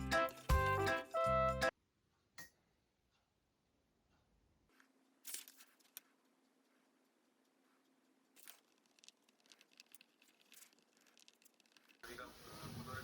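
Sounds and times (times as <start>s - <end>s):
faint clicks and rustles: 4.7s - 13.0s.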